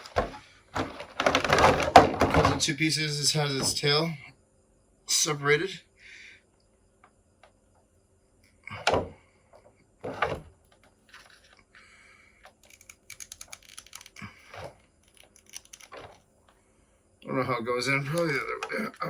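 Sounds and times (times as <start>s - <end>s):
small plastic clicks: 12.4s - 16.3s.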